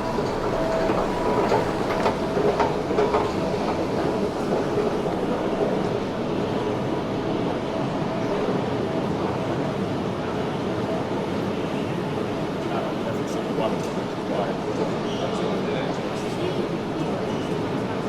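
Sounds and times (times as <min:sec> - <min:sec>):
wheels clicking on track: 0:00.0 - 0:05.3
train running: 0:00.0 - 0:18.0.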